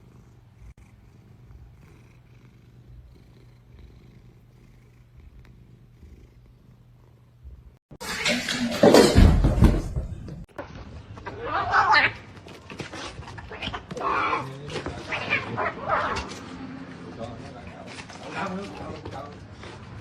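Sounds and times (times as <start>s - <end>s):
cat purring: 0.0s - 7.8s.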